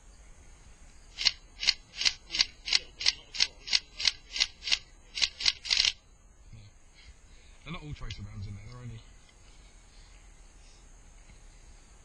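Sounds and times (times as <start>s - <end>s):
magazine rasping strokes: 1.2s - 6.0s.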